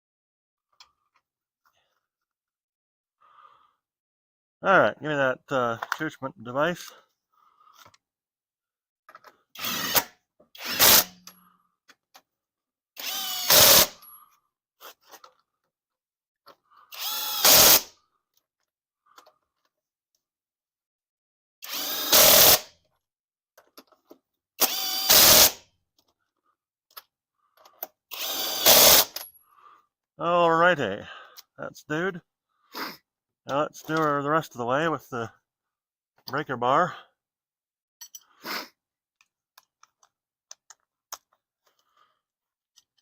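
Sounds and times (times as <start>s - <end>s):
power drill tightening lug nuts: 9.6s - 11.3s, 13.0s - 14.1s, 16.9s - 17.9s, 21.6s - 22.7s, 24.6s - 25.6s, 27.7s - 29.2s.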